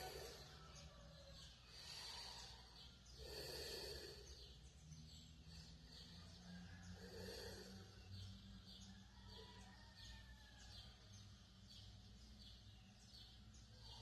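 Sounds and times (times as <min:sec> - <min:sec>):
person snoring: 0:03.2 - 0:04.3.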